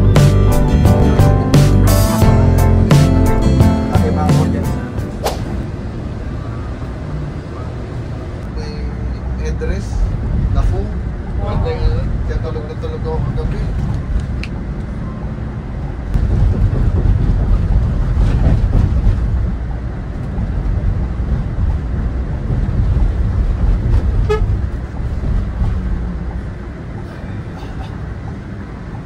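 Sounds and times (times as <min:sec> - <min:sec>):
bus engine and road rumble: 0:00.0 - 0:29.0
short horn toot: 0:24.2 - 0:24.6.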